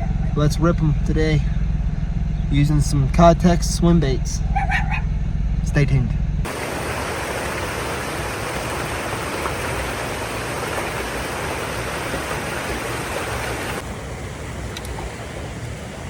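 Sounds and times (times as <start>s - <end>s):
water rushing through spillway: 6.5s - 16.0s.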